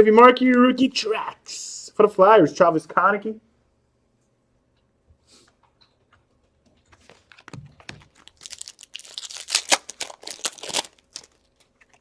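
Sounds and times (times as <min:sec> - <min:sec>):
wrapper tearing and crinkling: 0:07.2 - 0:12.0.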